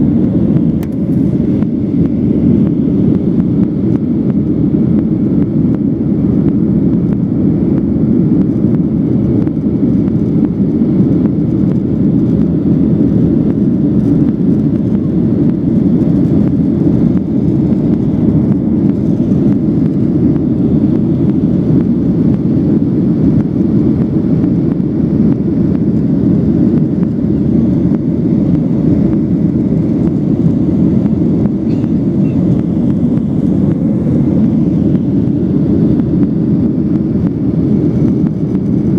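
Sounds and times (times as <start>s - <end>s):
jet engine drone in cabin: 0.0s - 38.9s
rushing air: 12.6s - 38.9s.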